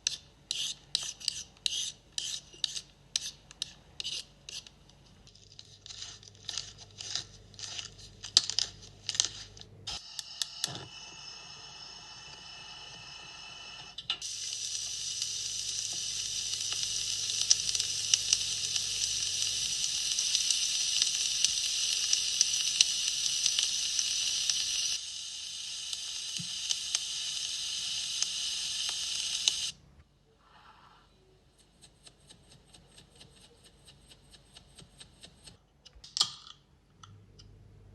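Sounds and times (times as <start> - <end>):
food sizzling in a hot pan: 14.2 - 29.7.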